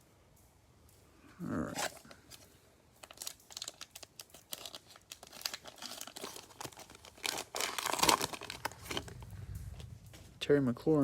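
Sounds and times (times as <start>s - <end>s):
cellophane wrapper crinkling and tearing: 1.5s - 10.0s.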